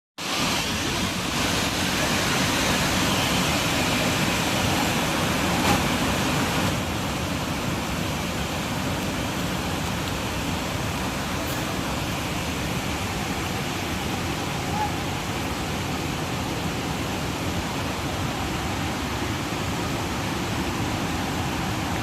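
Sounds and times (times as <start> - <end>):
waterfall rushing: 0.2 - 22.0.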